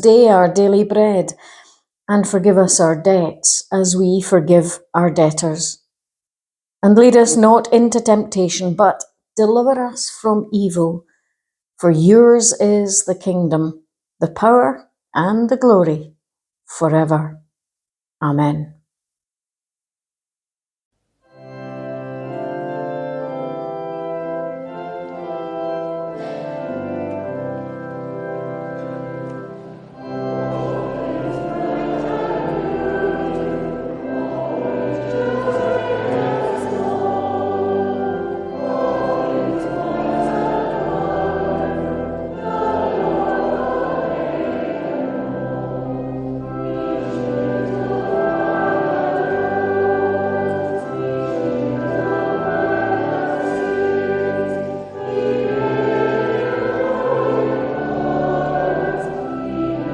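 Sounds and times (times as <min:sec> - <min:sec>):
choir singing: 0:07.0 - 0:07.8, 0:23.3 - 0:59.9
orchestral accompaniment: 0:07.0 - 0:07.8, 0:21.3 - 0:59.9.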